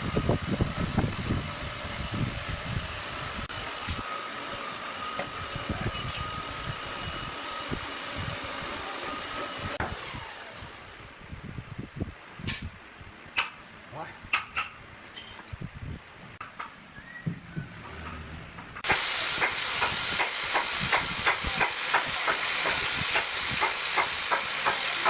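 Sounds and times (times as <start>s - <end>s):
power tool motor whining: 0.0s - 11.1s.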